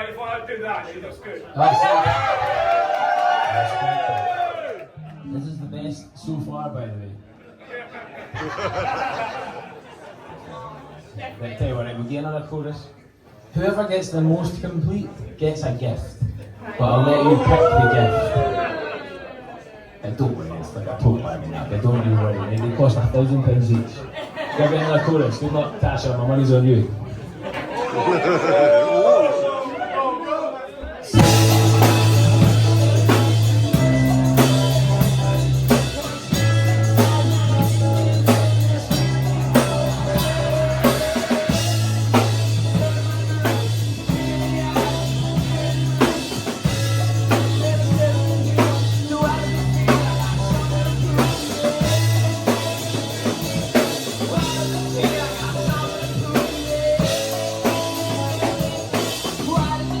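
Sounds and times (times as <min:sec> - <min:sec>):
drum kit beating: 0:01.7 - 0:04.2, 0:31.1 - 1:00.0
live rock band playing: 0:31.1 - 1:00.0
bass line: 0:31.2 - 1:00.0.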